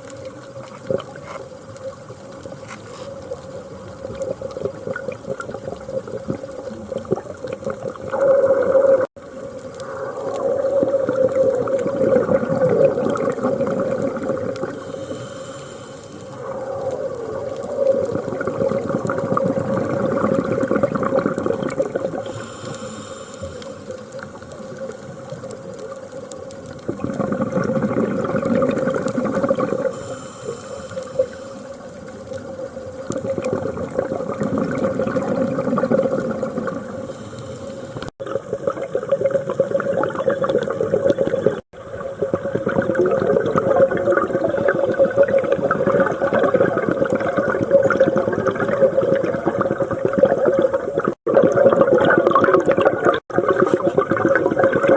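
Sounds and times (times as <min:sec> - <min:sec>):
exhaled bubbling: 0:03.2 - 0:15.6, 0:16.2 - 0:54.9
diver breathing through regulator: 0:14.6 - 0:17.0, 0:22.2 - 0:24.0, 0:29.8 - 0:31.8, 0:36.4 - 0:38.1.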